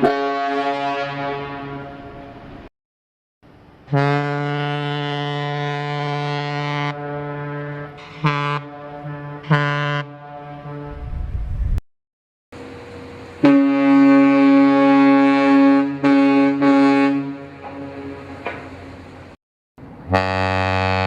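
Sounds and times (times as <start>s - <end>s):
ship whistle blasts: 0.0s - 2.4s, 3.9s - 11.2s, 13.4s - 18.2s, 20.1s - 21.0s
low rumble: 10.9s - 11.8s.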